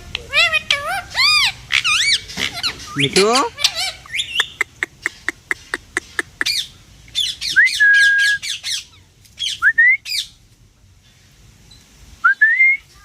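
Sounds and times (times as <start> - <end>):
parrot squawking: 0.1 - 10.3.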